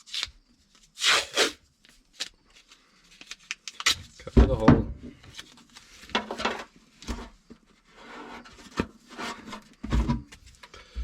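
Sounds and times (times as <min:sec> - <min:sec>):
tape rubbing and rustling: 0:00.0 - 0:04.2.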